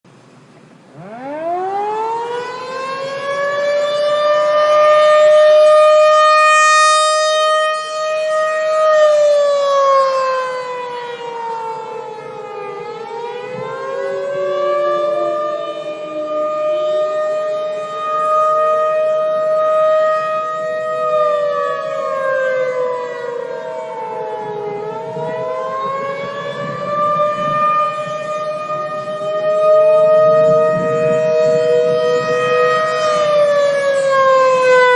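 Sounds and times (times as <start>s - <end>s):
air-raid siren wailing: 0.8s - 34.9s
second siren tone: 0.9s - 34.9s.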